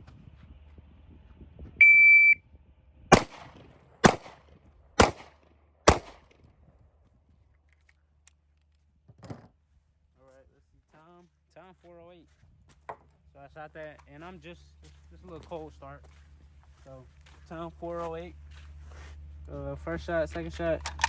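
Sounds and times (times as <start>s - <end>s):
shot timer beep: 1.8s - 2.4s
pistol shots: 3.1s - 4.4s, 5.0s - 6.3s.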